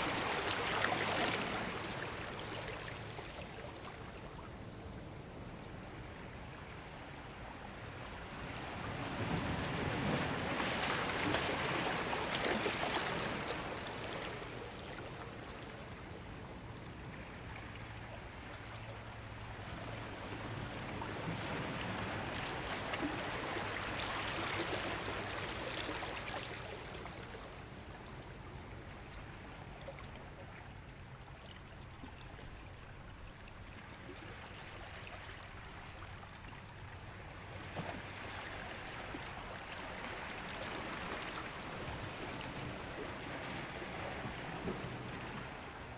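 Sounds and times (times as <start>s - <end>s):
ocean waves on shore: 0.0s - 4.1s, 4.8s - 28.2s, 37.0s - 45.9s.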